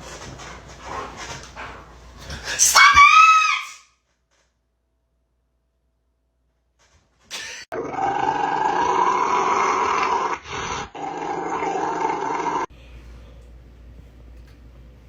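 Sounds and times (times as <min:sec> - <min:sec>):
dog growling: 0:07.7 - 0:12.7.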